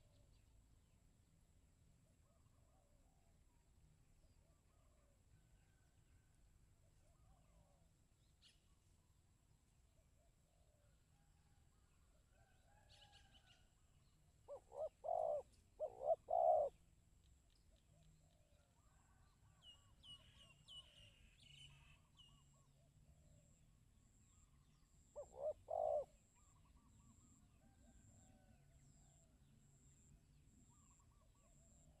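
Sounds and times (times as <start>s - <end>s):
dove cooing: 14.5s - 16.8s, 25.2s - 27.3s.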